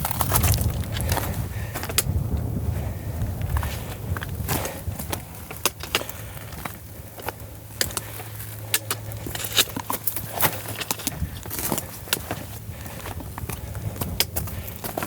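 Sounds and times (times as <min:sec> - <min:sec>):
footsteps on gravel: 0:00.0 - 0:15.0
low hum: 0:00.0 - 0:15.0.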